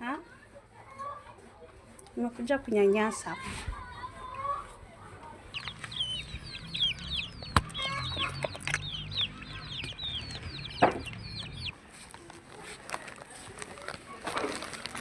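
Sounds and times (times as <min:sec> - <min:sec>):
chickens calling: 0:05.4 - 0:11.8
sharp knocks: 0:10.7 - 0:11.2.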